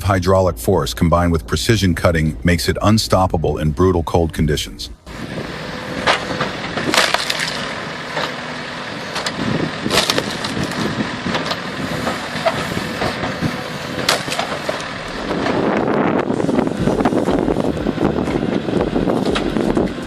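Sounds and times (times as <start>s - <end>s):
wood splitter machine noise: 5.1s - 20.0s
wood cracking and splintering: 6.0s - 8.4s, 9.2s - 15.7s.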